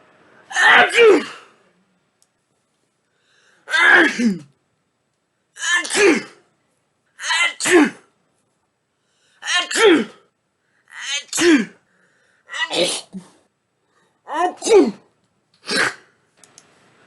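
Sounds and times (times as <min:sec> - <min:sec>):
person sneezing: 0:00.5 - 0:01.6, 0:03.7 - 0:04.5, 0:05.6 - 0:06.4, 0:07.2 - 0:08.1, 0:09.4 - 0:10.3, 0:10.9 - 0:11.8, 0:12.5 - 0:13.4, 0:14.3 - 0:16.2.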